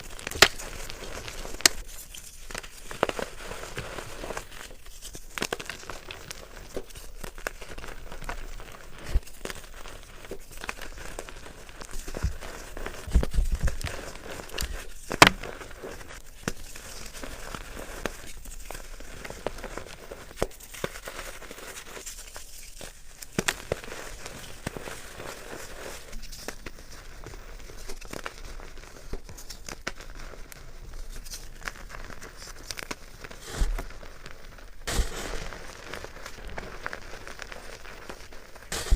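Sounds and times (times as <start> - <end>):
soft material crinkling and crackling: 0.0 - 38.9.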